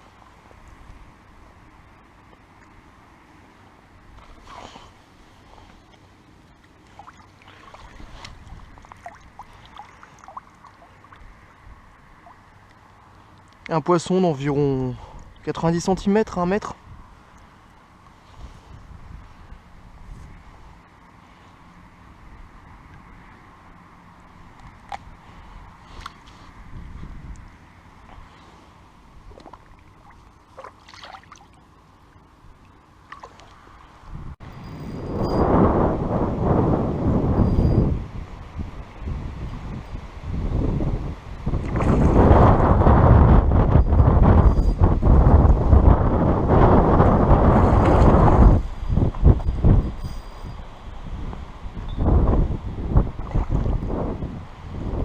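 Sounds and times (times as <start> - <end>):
water splashing and dripping: 6.6 - 11.3, 29.3 - 31.6.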